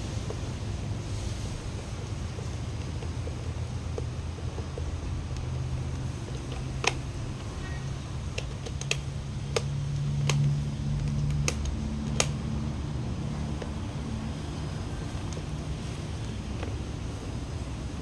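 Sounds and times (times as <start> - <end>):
steady low hum: 0.0 - 18.0
plastic parts clicking and tapping: 1.8 - 12.6.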